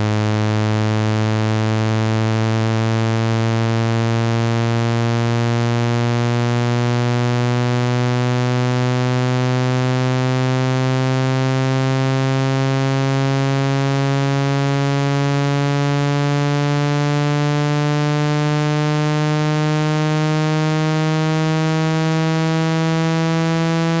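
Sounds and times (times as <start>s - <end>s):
low buzzy rising tone: 15.3s - 24.0s.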